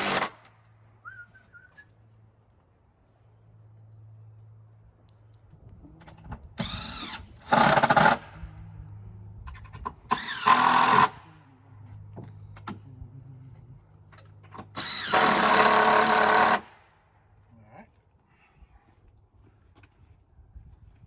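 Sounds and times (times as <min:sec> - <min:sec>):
cordless drill running: 0:06.6 - 0:08.2, 0:10.1 - 0:11.2, 0:14.8 - 0:16.7.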